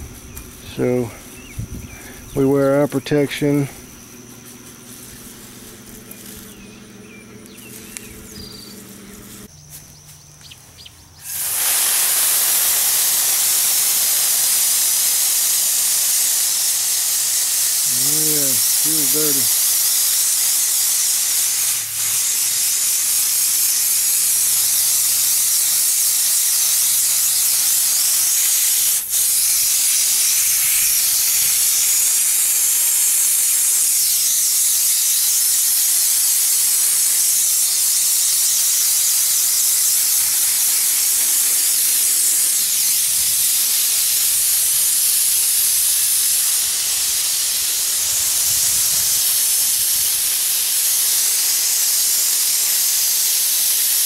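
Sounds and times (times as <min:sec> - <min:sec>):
hose water spraying hard: 0:11.2 - 0:54.0.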